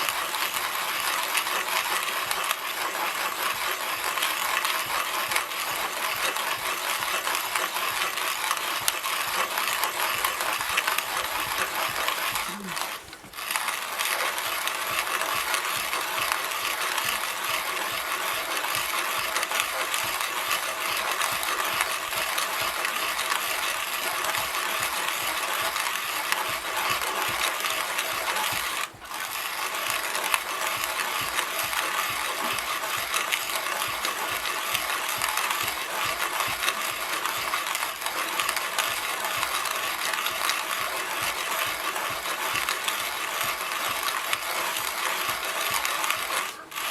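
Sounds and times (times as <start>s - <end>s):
hand coffee grinder grinding beans: 0.0s - 46.9s.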